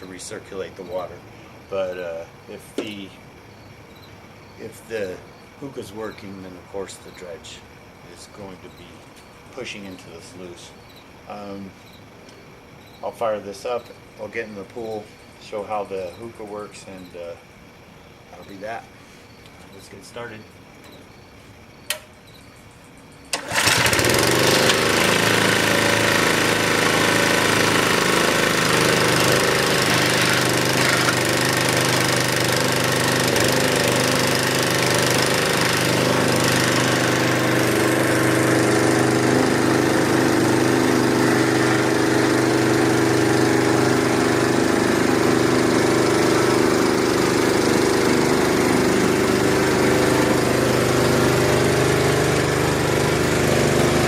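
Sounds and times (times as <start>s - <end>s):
small engine running: 23.3s - 54.0s.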